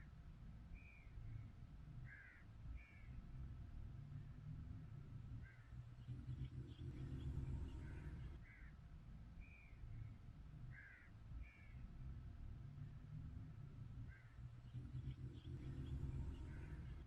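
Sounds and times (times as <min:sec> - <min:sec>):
low wind rumble: 0:00.0 - 0:17.0
bird calls: 0:05.4 - 0:08.7.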